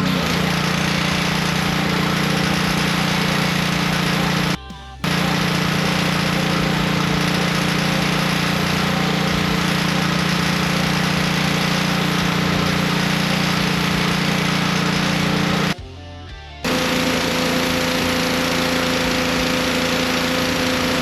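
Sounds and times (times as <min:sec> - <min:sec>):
pressure washer motor humming: 0:00.0 - 0:15.8, 0:16.6 - 0:21.0.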